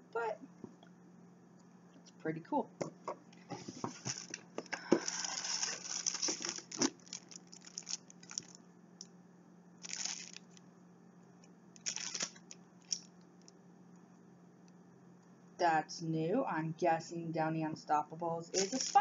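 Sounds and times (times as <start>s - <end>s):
packaging crinkling and tearing: 5.0s - 8.6s, 9.8s - 10.6s, 11.8s - 13.1s, 18.6s - 19.0s.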